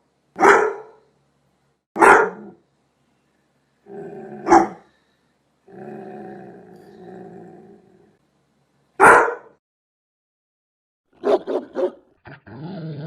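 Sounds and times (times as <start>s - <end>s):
another dog barking: 0.4s - 1.0s, 2.0s - 2.6s, 4.4s - 4.8s, 9.0s - 9.6s
dog barking: 0.4s - 1.0s, 2.0s - 2.6s, 4.4s - 4.9s, 9.0s - 9.6s, 11.2s - 12.1s.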